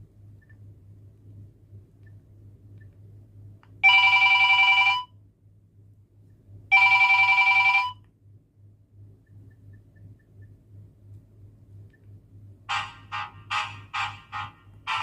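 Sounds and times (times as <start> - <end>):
electronic phone ringtone: 3.8 - 5.1, 6.7 - 8.0.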